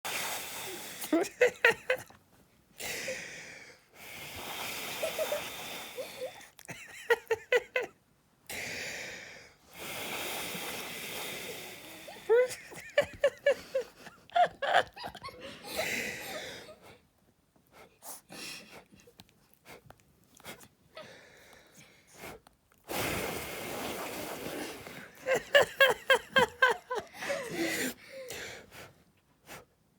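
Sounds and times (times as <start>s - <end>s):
breath blown out hissing: 0.1s - 1.2s, 4.0s - 6.3s, 8.8s - 12.8s, 22.2s - 25.6s
person giggling: 1.0s - 2.1s, 5.0s - 8.0s, 12.1s - 17.0s, 25.2s - 28.1s.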